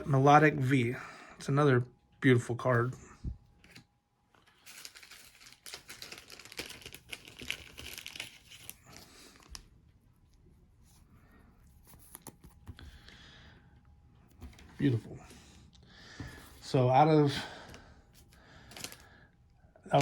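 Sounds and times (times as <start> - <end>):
plastic and foil crinkling: 4.4 - 9.7, 18.5 - 19.2.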